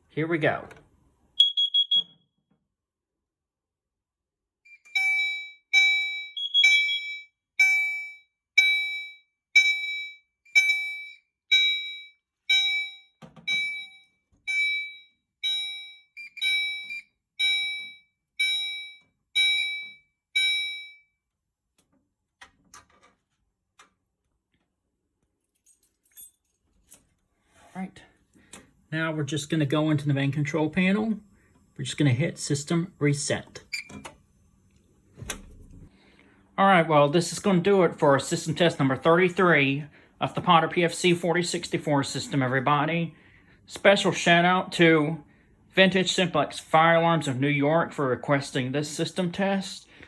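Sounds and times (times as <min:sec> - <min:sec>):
high beep: 0:01.4 - 0:02.1
pulsed fire alarm horn: 0:01.4 - 0:02.1, 0:04.8 - 0:21.0.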